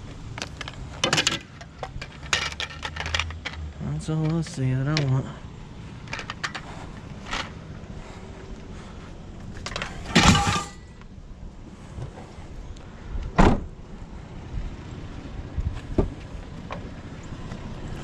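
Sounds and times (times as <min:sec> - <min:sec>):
items clicking and knocking: 0:00.3 - 0:05.2, 0:06.0 - 0:07.6
loud clatter with metallic ring: 0:09.7 - 0:11.0
car door slamming: 0:13.3 - 0:13.8.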